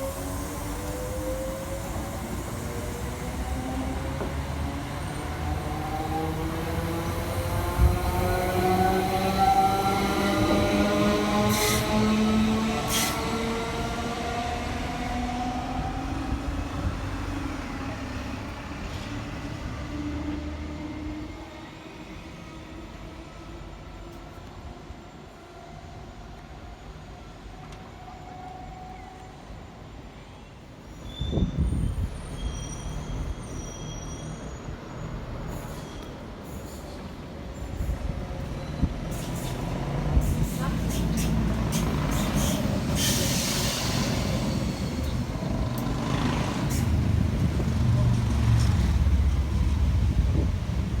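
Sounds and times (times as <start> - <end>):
train rumbling: 0.0 - 25.4, 30.8 - 51.0
train wheels rumbling: 31.5 - 51.0.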